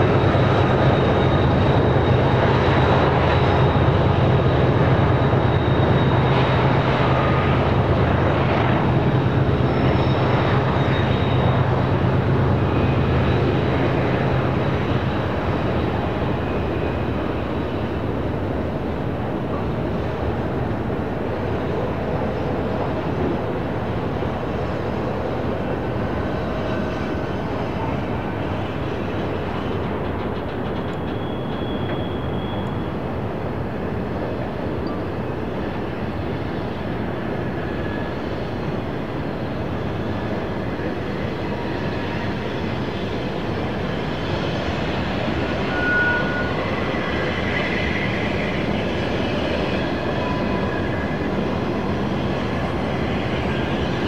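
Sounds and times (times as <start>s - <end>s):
freight train rolling: 0.0s - 54.0s
high-pitched wheel squeals: 9.6s - 11.8s, 30.7s - 33.0s, 44.4s - 51.1s.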